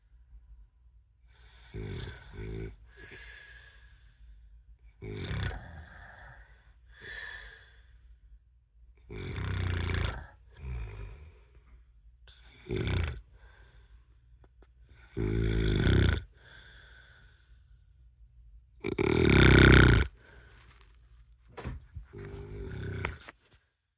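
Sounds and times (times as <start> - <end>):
person snoring: 1.4 - 3.7, 5.0 - 7.7, 9.1 - 11.4, 12.3 - 13.4, 15.0 - 16.9, 18.8 - 20.8, 22.1 - 23.3
soft breathing: 2.7 - 4.7, 5.8 - 8.4, 10.4 - 12.5, 13.2 - 14.8, 16.2 - 18.2, 20.0 - 23.8.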